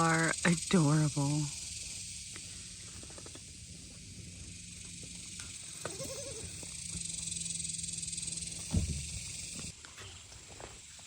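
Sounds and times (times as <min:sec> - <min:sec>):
high-pitched hiss: 0:00.0 - 0:11.0
baby goat bleating: 0:05.8 - 0:06.7.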